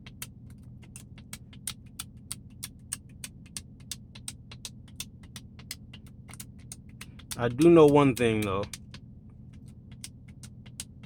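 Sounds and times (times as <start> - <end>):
rapid sharp clicks: 0.0 - 11.0
generator humming: 5.6 - 11.0.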